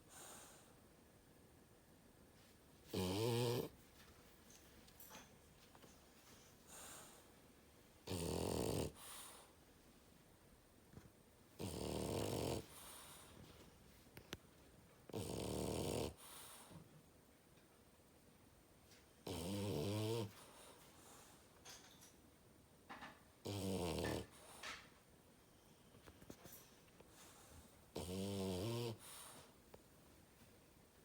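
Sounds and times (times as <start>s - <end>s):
dog snoring: 2.9s - 3.8s, 8.0s - 9.5s, 11.6s - 13.4s, 15.1s - 16.8s, 19.2s - 20.7s, 23.4s - 24.7s, 27.2s - 29.5s
dog breathing: 6.2s - 7.4s.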